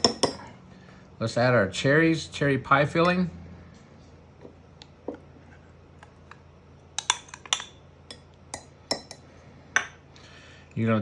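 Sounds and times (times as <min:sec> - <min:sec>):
spoon clinking against a mug: 0:00.0 - 0:00.5, 0:07.0 - 0:09.2.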